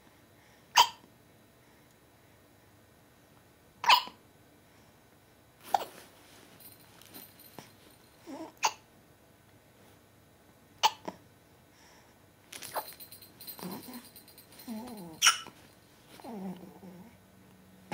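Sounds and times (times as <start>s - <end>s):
person hiccuping: 0.8s - 1.0s, 10.8s - 11.2s.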